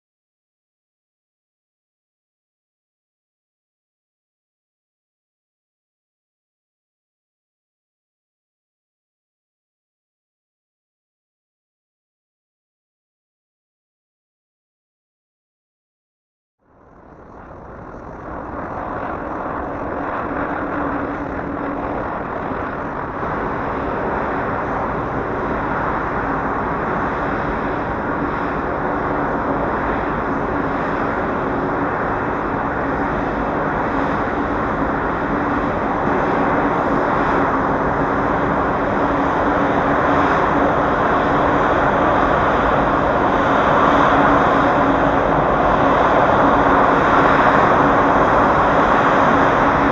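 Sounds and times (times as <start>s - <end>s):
jet engines running: 16.6s - 49.9s.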